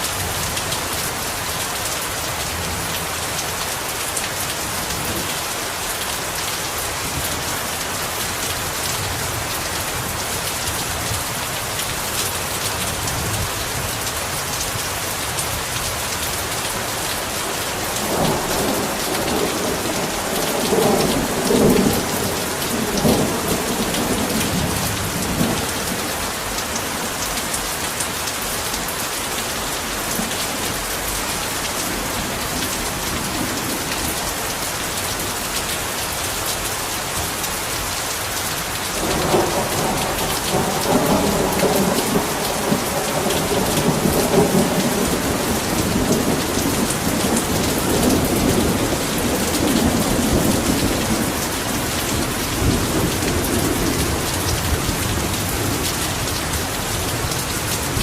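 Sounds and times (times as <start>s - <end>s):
heavy rain falling: 0.0s - 58.0s
rolling thunder rumble: 17.8s - 26.2s, 39.0s - 58.0s.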